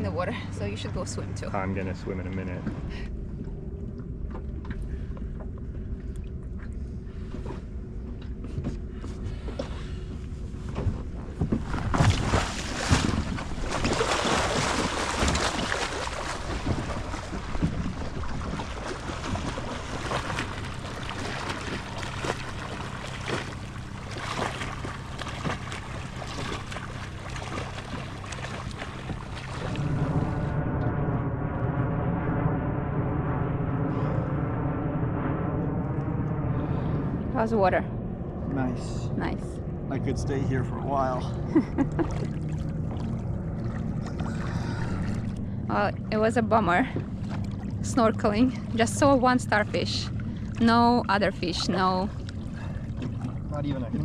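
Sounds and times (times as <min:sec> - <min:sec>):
outboard motor running: 0:00.0 - 0:54.0
wind on microphone: 0:08.6 - 0:40.2
water splashing: 0:11.5 - 0:30.8, 0:40.2 - 0:54.0.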